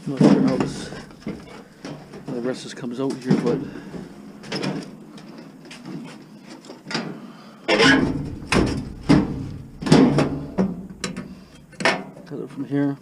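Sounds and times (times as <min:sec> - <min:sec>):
sheet metal clunks and scrapes: 0:07.7 - 0:12.2.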